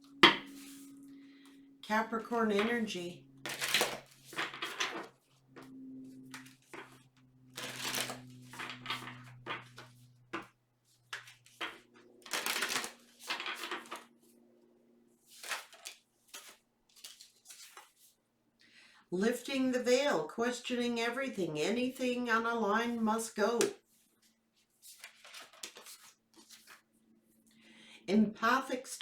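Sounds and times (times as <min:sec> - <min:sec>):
faint low hum: 0:00.0 - 0:15.3
cards being shuffled: 0:03.5 - 0:05.7, 0:07.6 - 0:10.5, 0:11.1 - 0:14.1, 0:15.3 - 0:18.0, 0:24.8 - 0:26.9.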